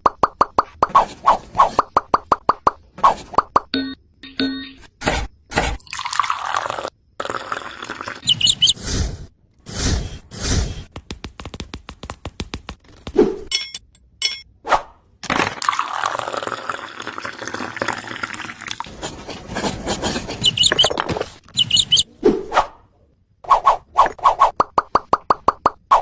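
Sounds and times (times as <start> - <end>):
high chirps: 8.2 - 8.8, 20.4 - 22.1.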